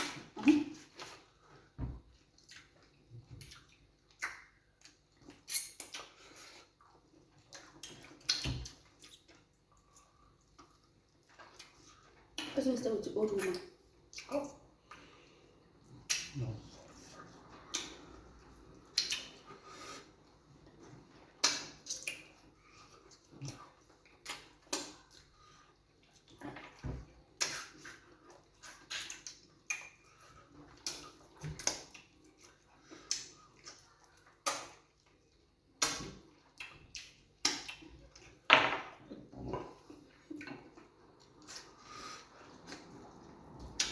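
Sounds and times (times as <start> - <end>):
lip smacks: 2.4 - 6.8, 7.5 - 10.8, 16.0 - 18.2, 18.8 - 19.8, 21.3 - 25.2, 27.4 - 35.0, 35.8 - 38.3.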